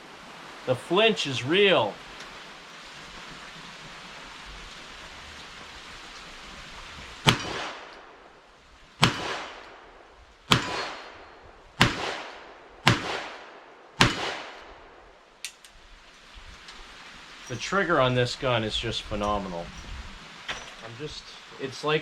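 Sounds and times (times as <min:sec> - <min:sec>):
rain hissing: 0:00.0 - 0:10.6, 0:15.0 - 0:22.0.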